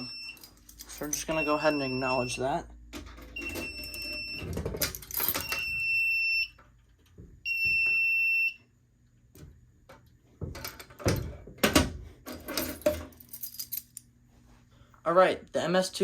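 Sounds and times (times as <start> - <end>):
alarm panel buzzer beeping: 0.0 - 0.5, 1.2 - 2.6, 3.3 - 4.6, 5.3 - 6.6, 7.4 - 8.7.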